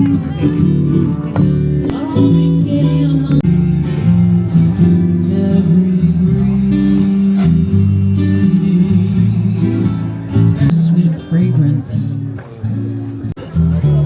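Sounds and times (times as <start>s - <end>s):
person singing: 0.0s - 12.2s
acoustic guitar strumming: 0.0s - 14.0s.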